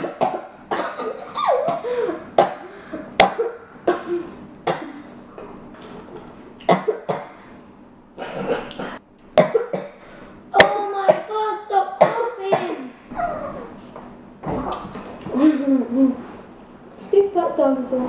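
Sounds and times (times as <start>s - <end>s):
boy coughing: 0.0s - 5.1s, 10.7s - 12.9s.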